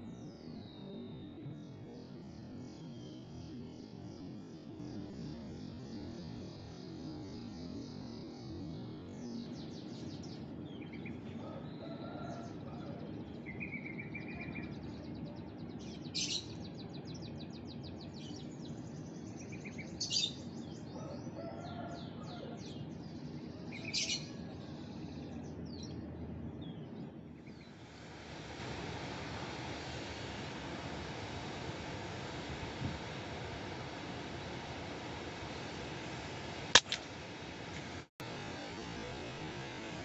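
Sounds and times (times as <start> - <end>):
steady hiss: 27.5 - 40.0.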